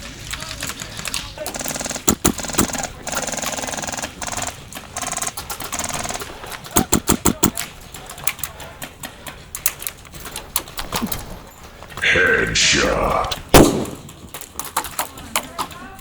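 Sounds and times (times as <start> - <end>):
airsoft guns firing bursts: 0.0 - 11.1, 12.0 - 16.0
sharp single shots: 1.8 - 3.0, 6.8 - 7.6, 12.8 - 14.3.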